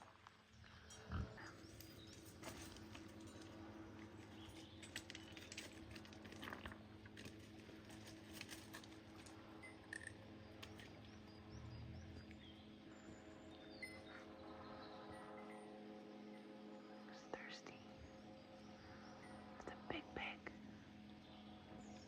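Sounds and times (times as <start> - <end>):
pig rooting clicks and rustles: 0.9 - 11.0.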